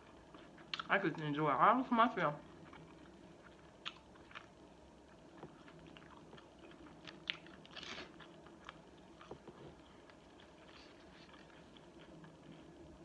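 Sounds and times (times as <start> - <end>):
mouth chewing clicks and smacks: 0.3 - 1.0, 2.6 - 12.7
food crunch: 2.4 - 12.8.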